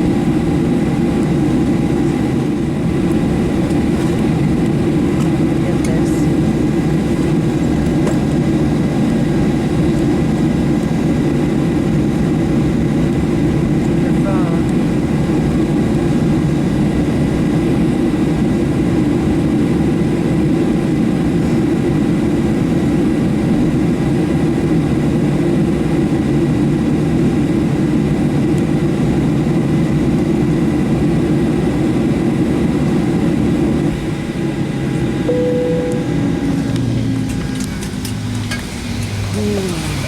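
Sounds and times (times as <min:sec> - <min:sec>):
airplane cabin engine rumble: 0:00.0 - 0:40.0.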